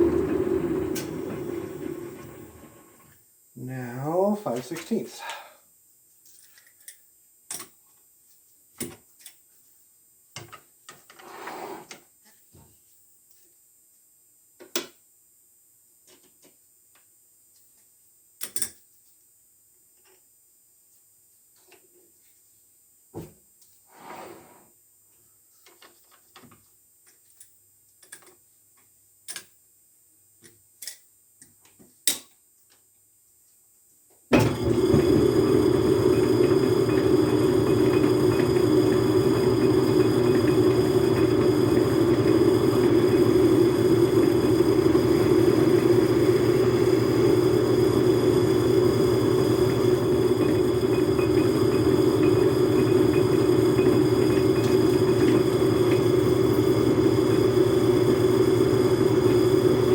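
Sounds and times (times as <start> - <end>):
lathe running with steady hum: 0.0 - 3.1, 34.4 - 59.9.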